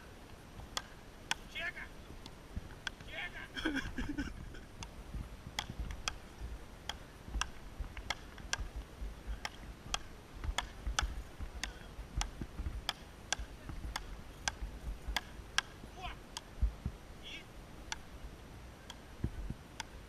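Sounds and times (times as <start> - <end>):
ball struck with wooden paddles: 5.5 - 15.8, 17.9 - 18.1.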